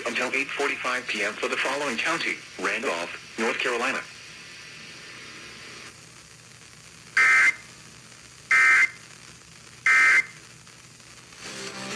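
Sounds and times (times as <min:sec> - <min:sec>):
faint radio hiss: 0:00.0 - 0:11.9
short data tone bursts: 0:07.2 - 0:07.6, 0:08.5 - 0:09.0, 0:09.9 - 0:10.4.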